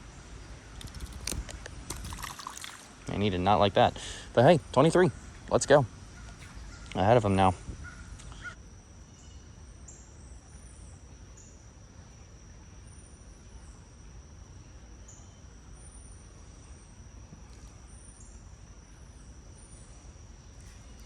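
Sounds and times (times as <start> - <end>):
insects trilling: 0.0 - 21.0.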